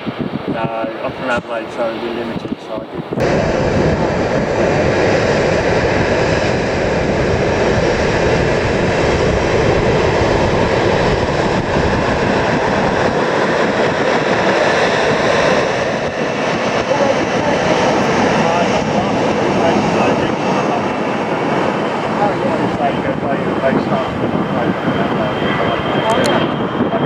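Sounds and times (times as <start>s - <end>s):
jet engine roar: 0.0s - 27.0s.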